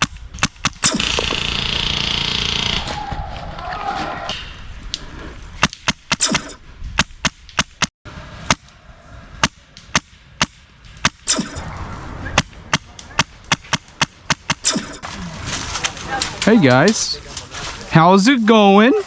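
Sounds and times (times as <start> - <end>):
airsoft gun shots: 0.7 - 1.6, 6.1 - 6.6, 11.3 - 11.7, 14.5 - 15.1.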